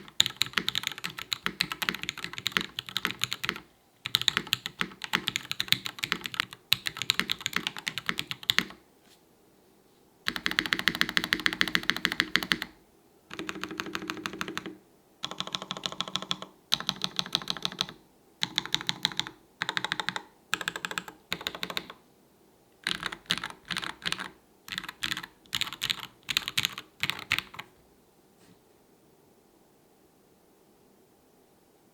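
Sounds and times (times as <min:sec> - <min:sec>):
mechanical keyboard typing: 0:00.0 - 0:08.8, 0:10.3 - 0:22.0, 0:22.8 - 0:27.7.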